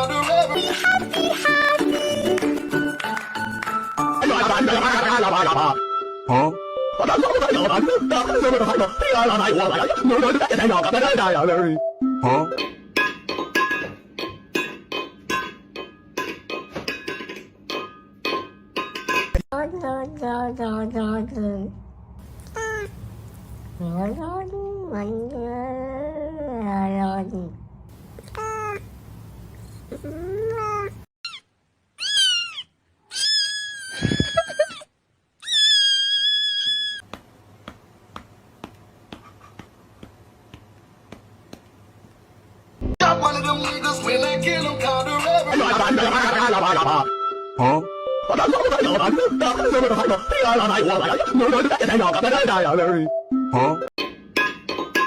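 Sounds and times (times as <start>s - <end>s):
cat meowing: 22.4s - 23.0s, 28.2s - 28.9s.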